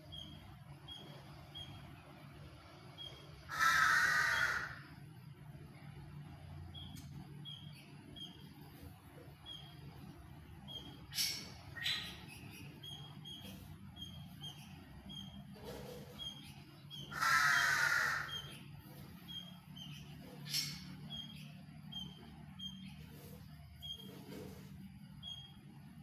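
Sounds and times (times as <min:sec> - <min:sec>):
birds chirping and calling: 0:03.0 - 0:04.8, 0:06.8 - 0:25.7.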